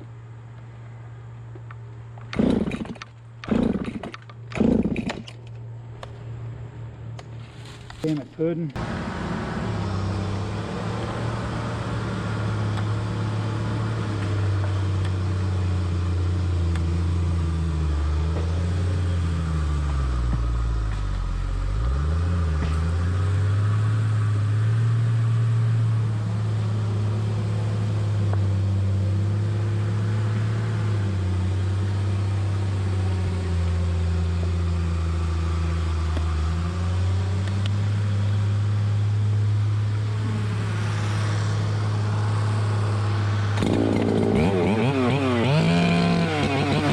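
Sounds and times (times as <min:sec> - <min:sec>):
logging machine engine under load: 0:02.2 - 0:05.6, 0:43.5 - 0:46.9.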